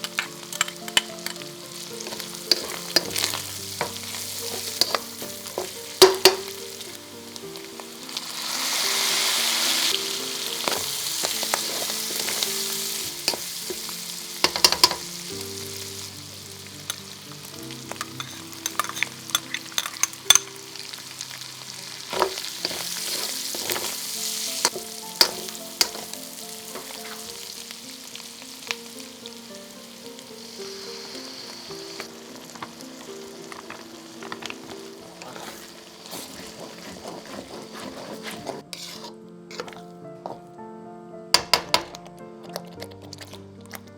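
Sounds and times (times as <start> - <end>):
utensil scraping a pan: 0.0 - 6.9, 8.1 - 15.4, 17.9 - 20.6, 21.8 - 27.4, 30.6 - 40.4
food sizzling in a pan: 0.0 - 40.4
soft background music: 0.0 - 43.9.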